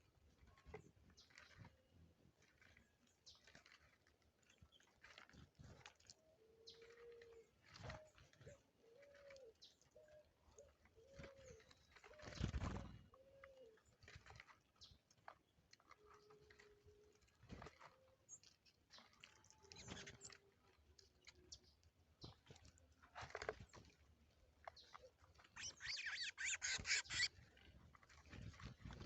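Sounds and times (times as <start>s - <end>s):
small birds chirping faintly: 24.4s - 27.4s.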